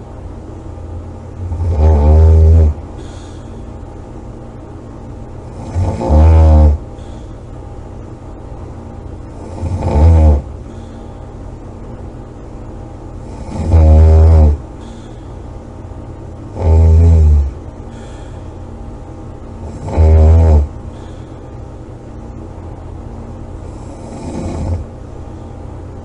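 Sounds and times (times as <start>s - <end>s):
person snoring loudly: 1.4s - 3.3s, 5.4s - 6.9s, 9.3s - 10.9s, 13.2s - 14.6s, 16.5s - 18.3s, 19.6s - 21.2s, 23.6s - 24.9s.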